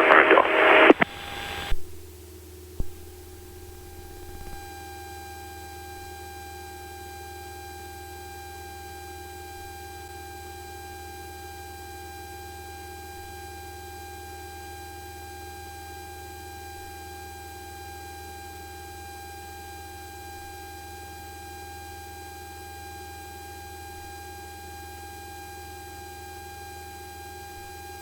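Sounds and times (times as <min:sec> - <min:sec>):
airplane cabin drone: 0:00.0 - 0:01.7.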